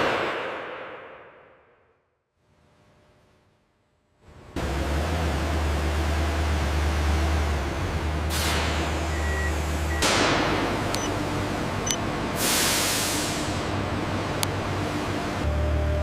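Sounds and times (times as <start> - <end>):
low machine hum: 7.1 - 16.0
sharp clicks: 10.9 - 11.2
hissing air bursts: 12.4 - 13.8.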